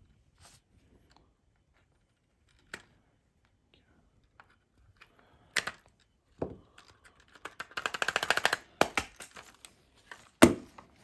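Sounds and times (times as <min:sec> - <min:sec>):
plastic toy clicks and knocks: 0:06.8 - 0:09.6.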